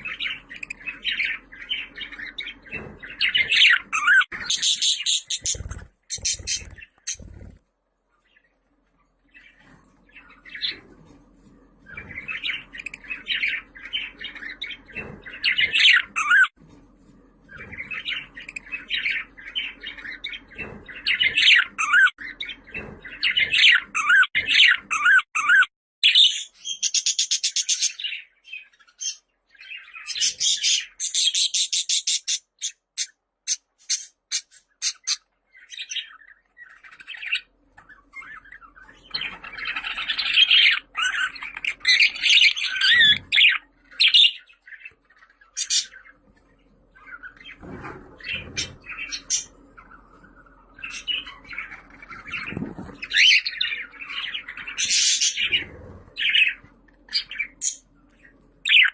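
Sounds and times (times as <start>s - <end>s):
budgerigars chattering: 38.2s - 46.2s, 58.7s - 58.9s.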